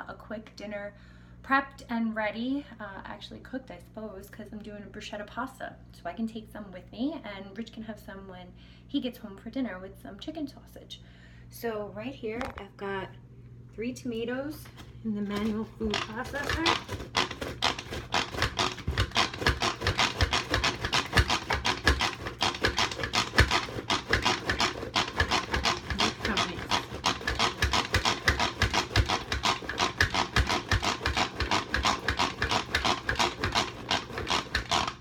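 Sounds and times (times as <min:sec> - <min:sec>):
food processor whirring and chopping: 0:15.3 - 0:35.0.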